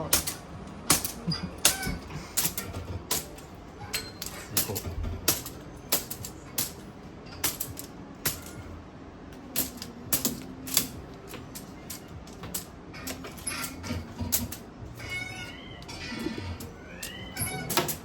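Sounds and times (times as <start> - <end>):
cats playing with a toy: 0.0 - 8.7, 9.4 - 18.0.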